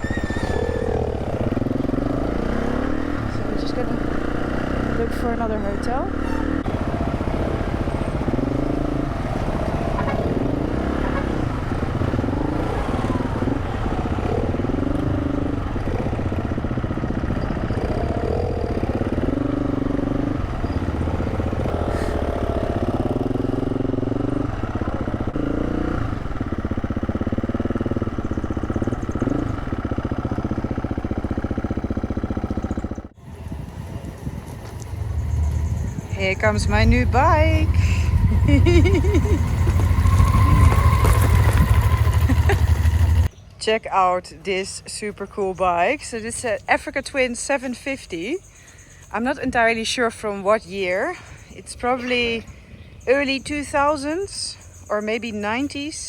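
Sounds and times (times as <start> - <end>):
motorcycle engine accelerating: 0.0 - 43.4, 51.0 - 56.0.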